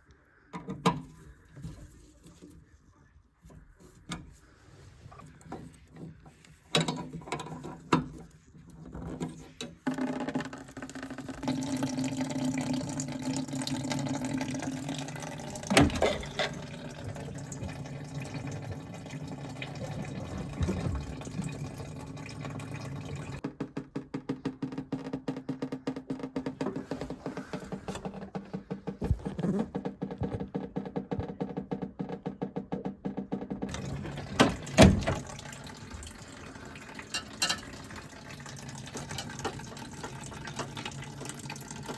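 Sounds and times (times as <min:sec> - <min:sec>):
water running: 0:10.4 - 0:23.4, 0:33.7 - 0:41.9.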